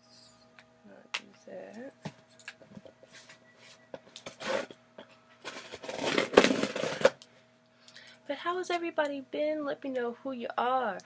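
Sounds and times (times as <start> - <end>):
scraping on cardboard box: 4.3 - 4.7, 5.5 - 7.1.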